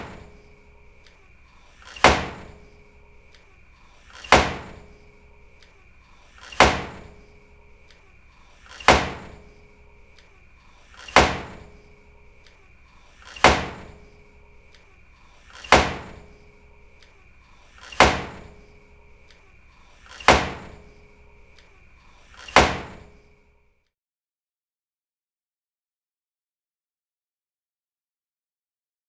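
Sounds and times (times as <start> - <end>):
door slamming shut: 0.0 - 10.3, 10.9 - 19.4, 20.0 - 21.2, 22.3 - 23.3.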